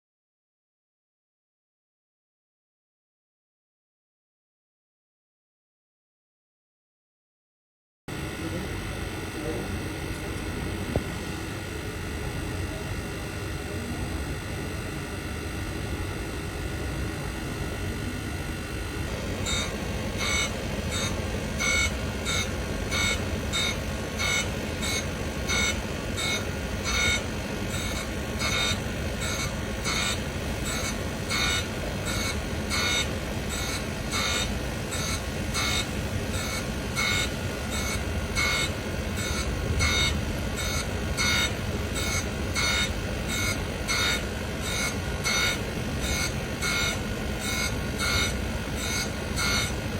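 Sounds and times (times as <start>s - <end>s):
grinding machine motor hum: 8.1s - 49.9s
high-pitched grinding bursts: 19.1s - 49.9s.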